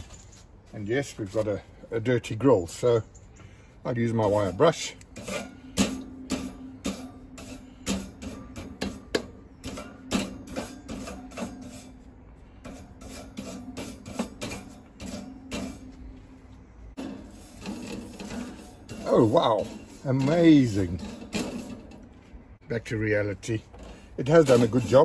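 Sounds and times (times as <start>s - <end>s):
wire brush scraping grill grate: 3.9s - 16.3s, 16.9s - 22.6s, 23.2s - 25.0s.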